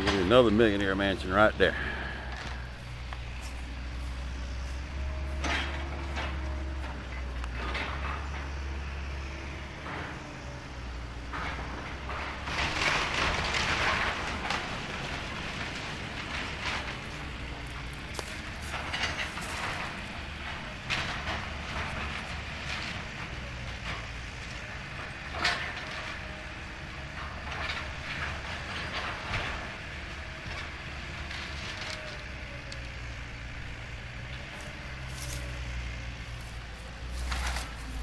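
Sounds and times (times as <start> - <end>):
demolition machinery engine hum: 0.0 - 38.0
debris cracking and knocking: 12.0 - 24.0.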